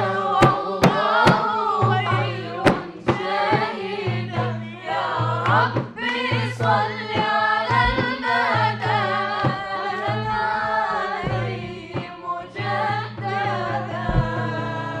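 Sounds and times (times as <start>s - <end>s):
solo voice singing devotional song: 0.0s - 15.0s
steady low drone note: 14.1s - 14.9s.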